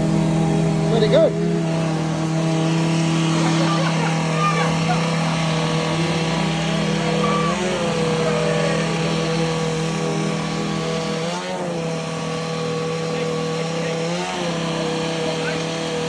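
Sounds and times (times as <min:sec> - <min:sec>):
engine running steadily: 0:00.0 - 0:16.0.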